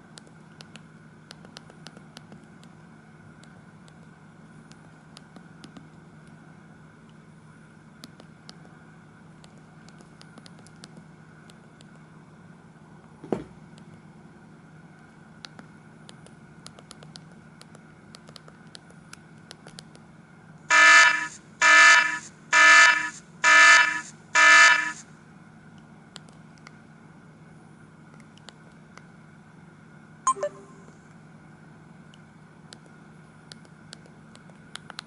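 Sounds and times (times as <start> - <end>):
phone electronic beeps: 30.3 - 31.0.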